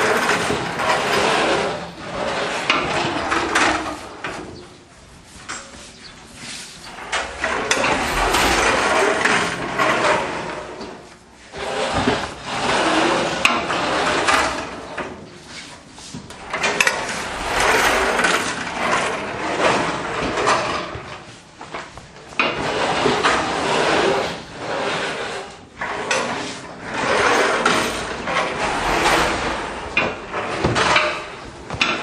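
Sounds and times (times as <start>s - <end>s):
mechanical clatter and knocking: 6.9s - 9.8s.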